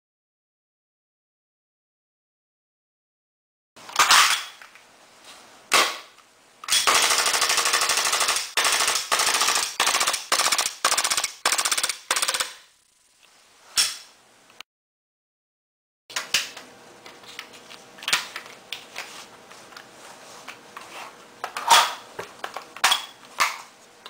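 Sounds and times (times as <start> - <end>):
airsoft pistol firing: 6.7 - 12.6.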